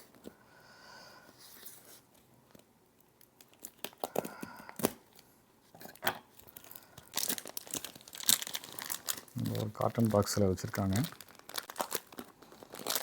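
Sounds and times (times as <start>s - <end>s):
packaging being torn open: 3.1s - 5.0s, 6.5s - 13.0s.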